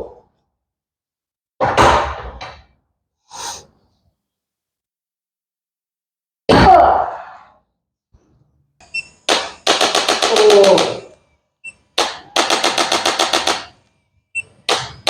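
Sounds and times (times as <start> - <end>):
rapid percussive tapping on body: 9.3 - 11.0.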